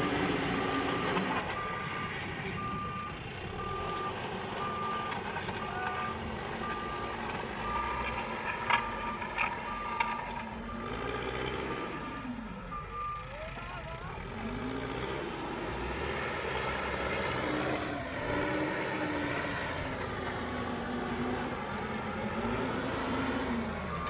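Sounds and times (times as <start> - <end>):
engine running: 0.0 - 24.0
reversing alarm beeping: 0.1 - 13.5, 21.3 - 24.0.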